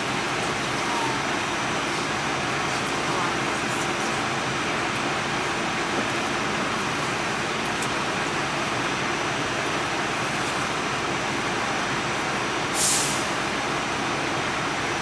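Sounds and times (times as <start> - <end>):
subway train running on rails: 0.0 - 15.0
brief hiss: 12.8 - 13.3.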